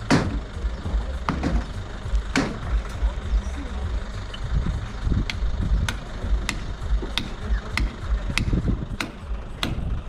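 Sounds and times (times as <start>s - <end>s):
hammer strikes: 0.0s - 0.6s, 1.2s - 3.1s, 5.2s - 10.0s
low rumble: 0.0s - 10.0s.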